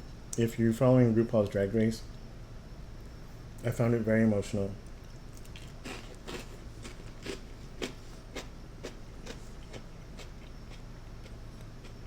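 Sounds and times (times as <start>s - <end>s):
chewing crunchy toast: 5.2s - 12.0s.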